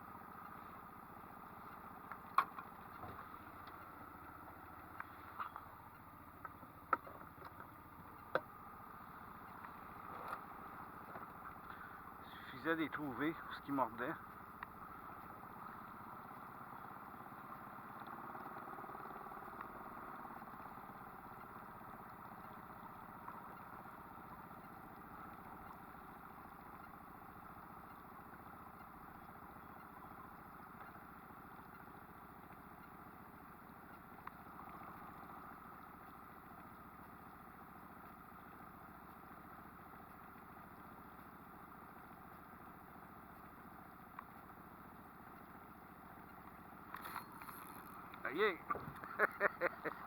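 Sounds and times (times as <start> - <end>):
outboard motor running: 0.0 - 50.0
light ticks: 0.3 - 50.0.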